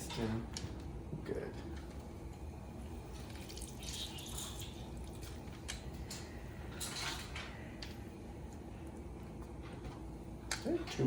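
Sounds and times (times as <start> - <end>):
lemon juice dripping: 3.2 - 5.8.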